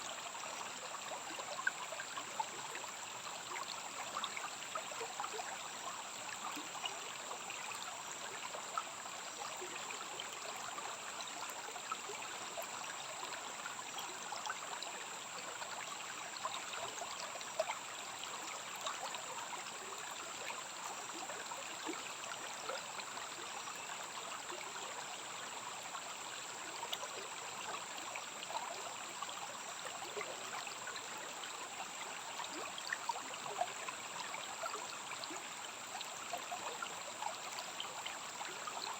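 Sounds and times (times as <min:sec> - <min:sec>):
stream trickling: 0:00.0 - 0:38.9.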